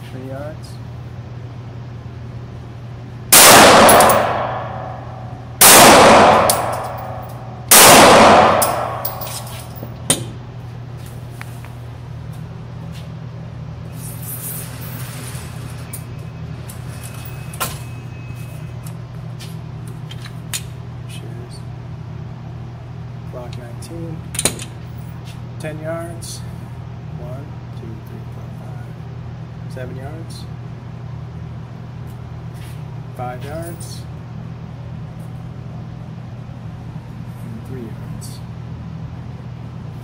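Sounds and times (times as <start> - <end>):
pistol shots: 3.3 - 9.4.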